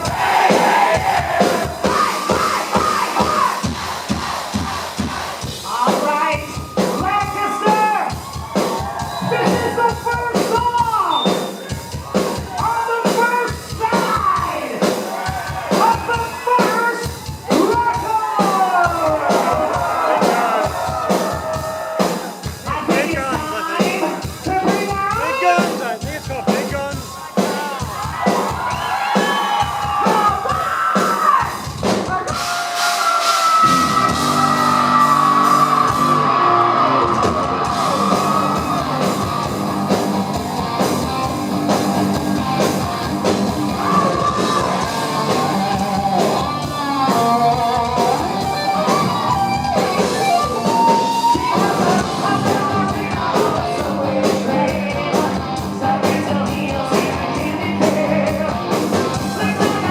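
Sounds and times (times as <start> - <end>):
heavy metal band playing: 0.0 - 59.9
man singing: 43.8 - 48.4, 50.3 - 59.9.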